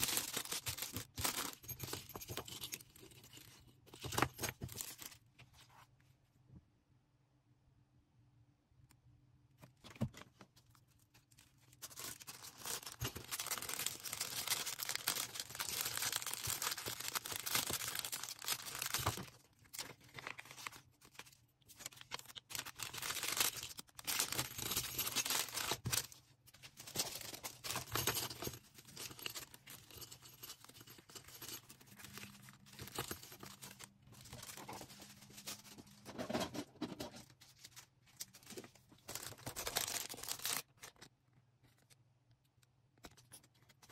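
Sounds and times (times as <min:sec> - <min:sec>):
plastic packaging rustling: 0:00.0 - 0:02.9, 0:09.9 - 0:41.1.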